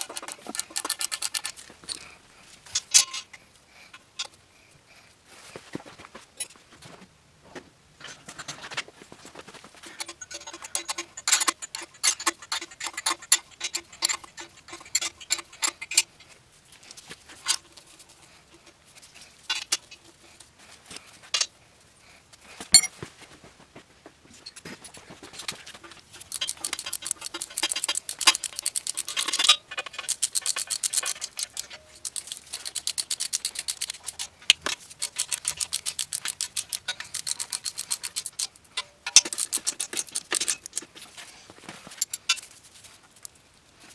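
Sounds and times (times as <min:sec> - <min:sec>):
ratchet wrench clicking: 0:00.0 - 0:02.0, 0:26.2 - 0:40.9.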